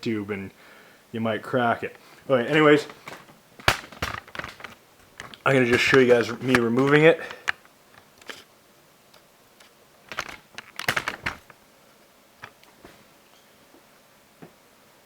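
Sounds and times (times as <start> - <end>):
small tools clicking and clattering: 2.5 - 8.5, 9.6 - 11.6.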